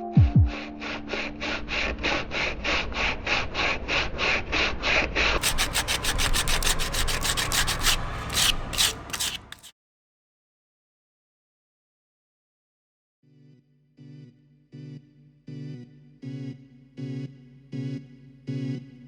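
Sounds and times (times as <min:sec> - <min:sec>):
rhythmic hand rubbing strokes: 0:05.4 - 0:09.7.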